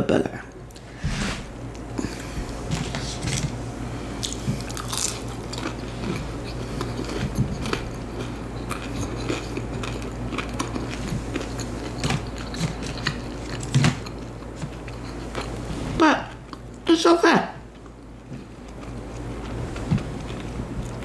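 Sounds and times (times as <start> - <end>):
steady low hum: 0.0 - 21.0
person crunching fried chicken: 4.2 - 14.2.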